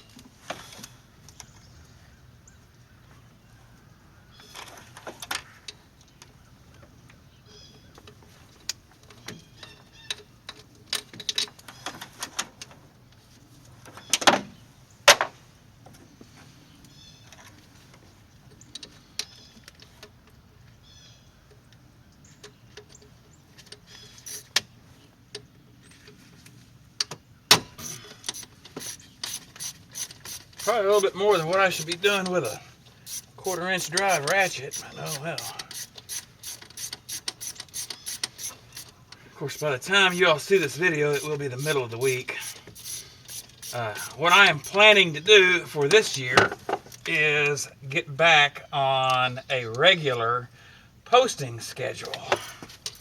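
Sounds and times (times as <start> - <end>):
ratchet clicking: 24.2 - 24.6, 27.8 - 38.9, 40.1 - 44.8.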